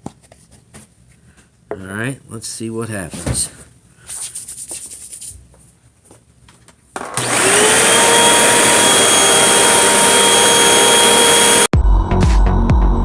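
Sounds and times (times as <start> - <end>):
upright vacuum cleaner running: 7.0 - 11.7.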